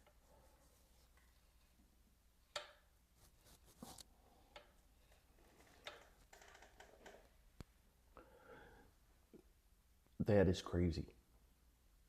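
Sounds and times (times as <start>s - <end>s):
faint clicks and rustles: 2.5s - 7.8s.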